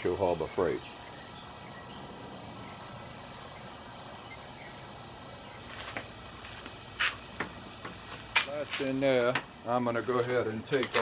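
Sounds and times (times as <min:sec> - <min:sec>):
ultrasonic cleaner hiss and whine: 0:00.0 - 0:11.0.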